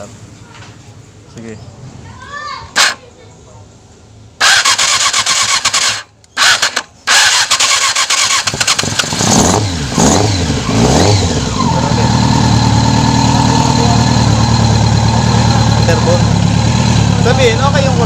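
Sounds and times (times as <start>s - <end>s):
motorcycle electric starter cranking: 2.7s - 3.0s, 4.4s - 11.8s
motorcycle engine revving and idling: 4.4s - 18.0s.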